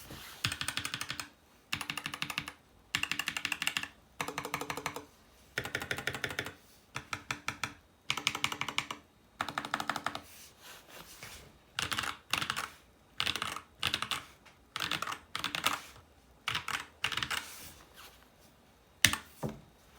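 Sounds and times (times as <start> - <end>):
mechanical keyboard typing: 0.4 - 10.2, 11.8 - 17.5, 19.0 - 19.3.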